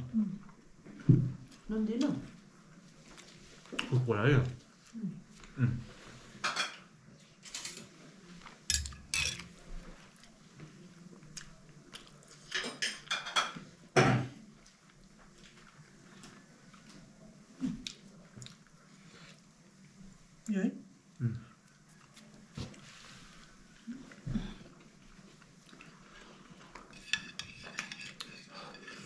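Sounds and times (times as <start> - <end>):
spoons and plates clinking: 8.7 - 9.5.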